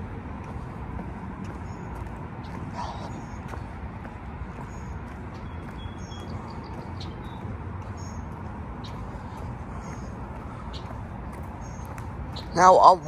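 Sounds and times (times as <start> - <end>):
low outdoor rumble: 0.0 - 13.0.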